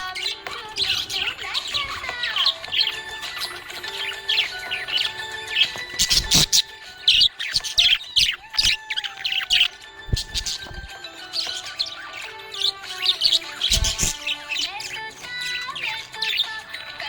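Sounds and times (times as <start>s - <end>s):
budgerigars chirping: 0.0s - 17.0s.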